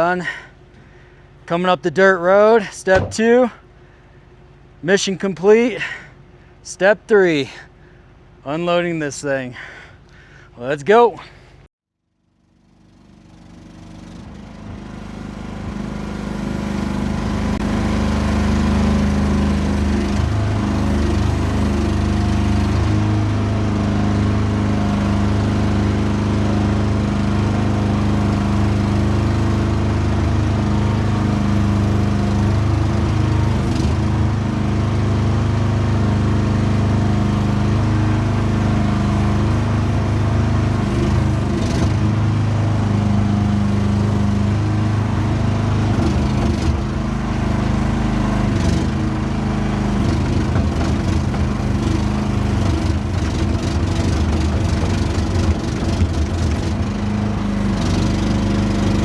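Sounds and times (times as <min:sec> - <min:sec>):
small excavator engine running: 0:02.6 - 0:05.0, 0:12.3 - 0:59.0
short clunks: 0:02.8 - 0:03.6.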